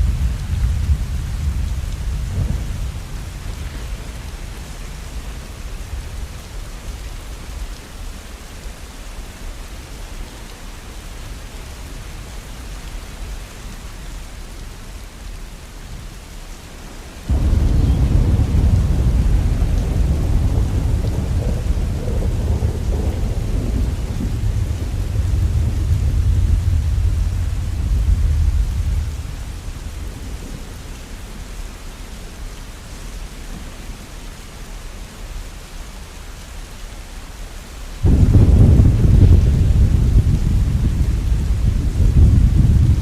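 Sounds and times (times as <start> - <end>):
low rumble of thunder: 0.0 - 7.8, 17.3 - 31.9, 38.0 - 43.0
steady rain: 0.0 - 43.0.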